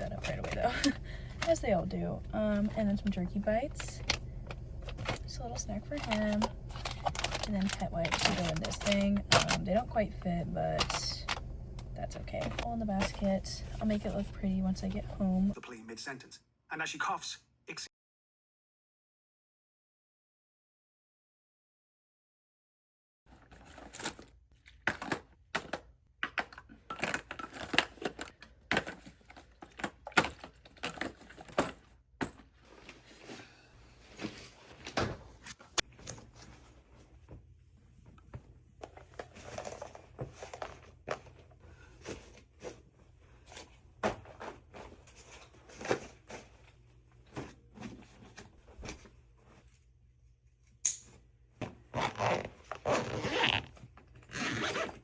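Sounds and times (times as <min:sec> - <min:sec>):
packaging crinkling and tearing: 0:03.7 - 0:09.7.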